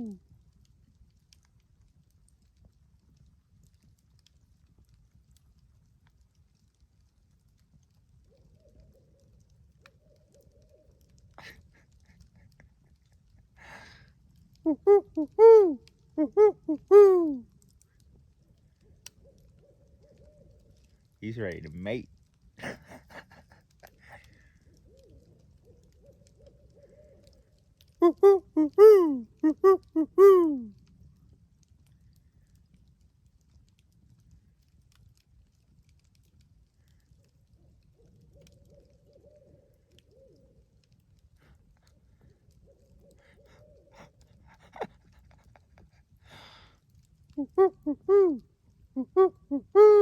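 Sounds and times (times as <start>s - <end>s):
owls hooting faintly: 7.9s - 22.0s, 22.6s - 32.7s, 36.7s - 50.0s
owl hooting: 14.6s - 17.4s, 24.7s - 27.4s, 28.0s - 30.7s, 38.6s - 40.6s, 42.6s - 45.6s, 47.4s - 48.4s, 49.0s - 50.0s.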